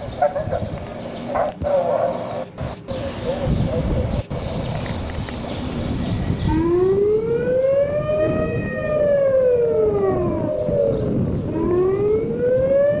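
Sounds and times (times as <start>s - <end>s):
rough background rumble: 0.0s - 12.1s
warning siren wailing: 6.1s - 13.0s.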